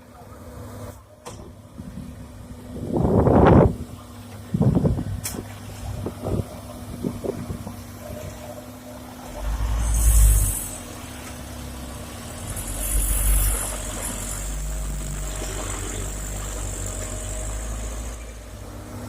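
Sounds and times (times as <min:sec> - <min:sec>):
excavator diesel engine running: 0:00.0 - 0:19.0
hydraulic hiss: 0:09.4 - 0:11.0.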